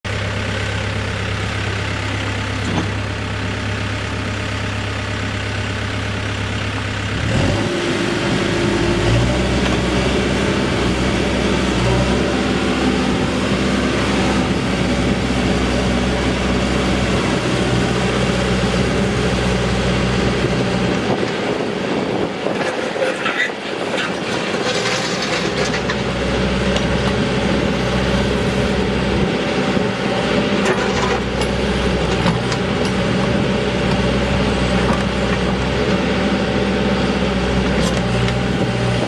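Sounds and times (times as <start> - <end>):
diesel engine idling: 0.1 - 39.0.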